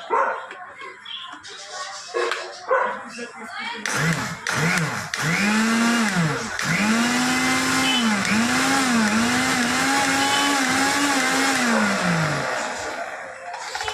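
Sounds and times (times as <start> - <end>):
mixer grinder motor whining: 3.8 - 13.2.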